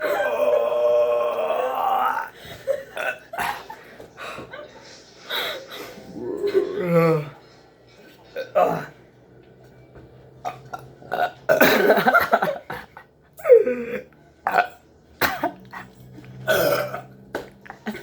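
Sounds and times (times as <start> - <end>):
person burping: 0.0 - 3.4, 6.0 - 7.4, 10.5 - 12.0, 13.5 - 14.8, 16.5 - 17.1.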